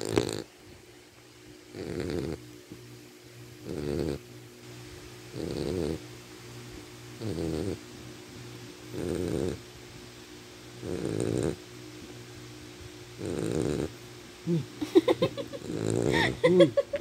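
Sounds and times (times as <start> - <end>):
pet snoring: 0.0 - 0.5, 1.7 - 2.4, 3.6 - 4.2, 5.3 - 6.0, 7.2 - 7.8, 8.9 - 9.6, 10.8 - 11.6, 13.2 - 14.7, 15.6 - 16.3.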